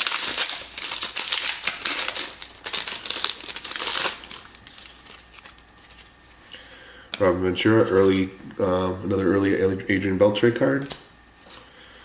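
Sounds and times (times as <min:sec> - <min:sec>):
wrapper tearing and crinkling: 0:00.0 - 0:06.2.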